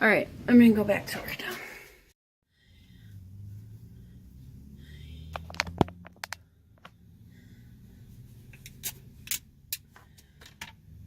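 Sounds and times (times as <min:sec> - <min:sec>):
sharp clicks and knocks: 0:05.3 - 0:07.0.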